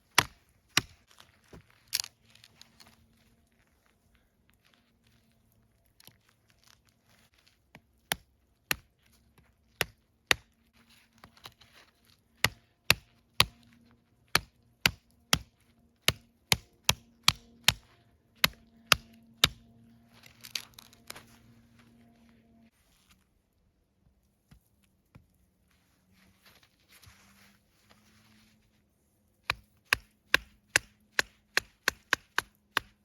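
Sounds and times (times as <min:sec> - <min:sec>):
rustling: 0:00.0 - 0:07.7, 0:19.8 - 0:29.7
knife chopping strikes: 0:16.1 - 0:19.6, 0:29.4 - 0:33.0.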